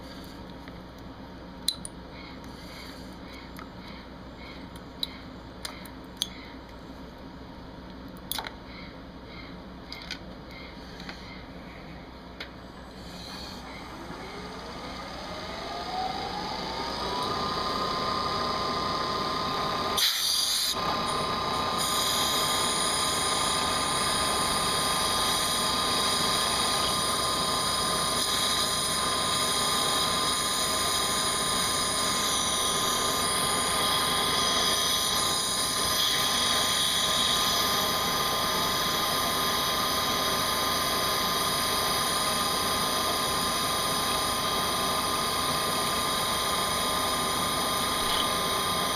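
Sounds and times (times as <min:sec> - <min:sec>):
milling machine spindle whine: 0:12.7 - 0:48.9.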